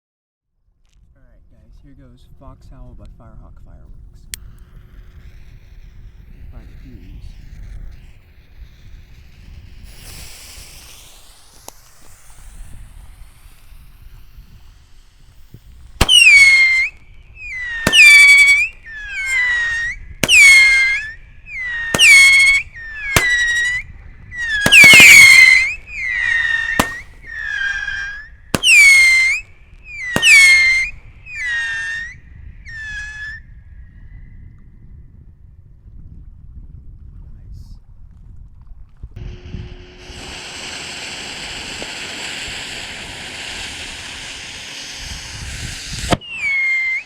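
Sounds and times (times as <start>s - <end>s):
firework launch pops: 4.2s - 33.4s, 40.0s - 47.0s
firework whistles: 4.3s - 34.6s, 39.2s - 47.0s
fuse hissing: 9.7s - 23.8s, 24.4s - 32.0s, 39.2s - 46.3s.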